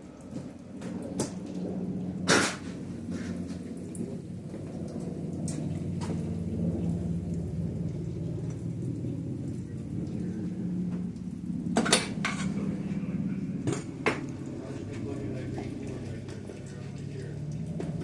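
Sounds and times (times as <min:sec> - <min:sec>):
steady low hum: 0:00.0 - 0:18.0
metal knocks and clanks: 0:11.7 - 0:12.8.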